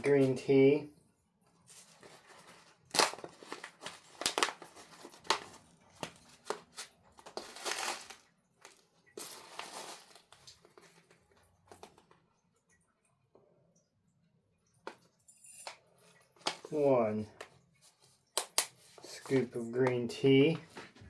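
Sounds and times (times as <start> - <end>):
tea package crinkling: 1.7 - 12.2.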